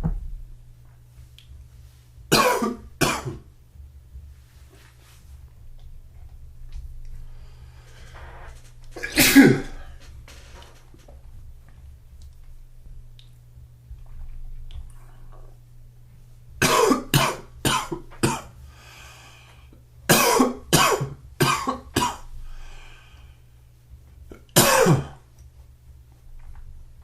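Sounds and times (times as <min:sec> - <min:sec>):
man coughing: 0:02.3 - 0:03.4, 0:09.0 - 0:10.0, 0:16.6 - 0:18.5, 0:20.1 - 0:22.2, 0:24.3 - 0:25.2
noisy breath intake: 0:07.2 - 0:08.7, 0:18.6 - 0:19.8, 0:22.3 - 0:23.6.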